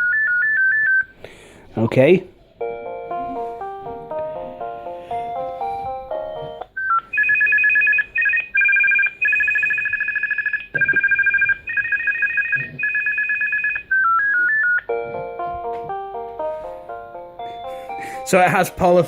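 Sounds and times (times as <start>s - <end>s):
polyphonic ringtone melody: 2.6s - 19.0s
electronic two-tone trill: 7.2s - 15.8s.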